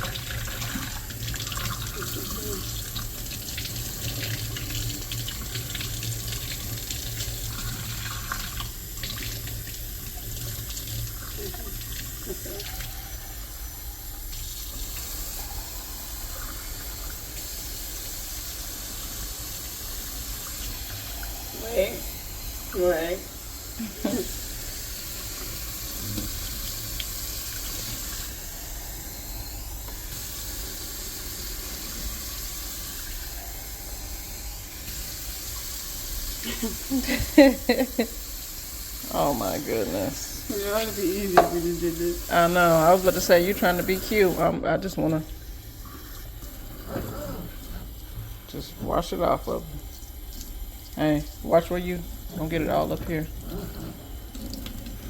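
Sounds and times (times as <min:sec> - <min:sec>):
tap water running into bath: 0:00.0 - 0:55.0
tap water splashing into bath: 0:25.4 - 0:28.2, 0:41.2 - 0:41.9, 0:49.8 - 0:51.5.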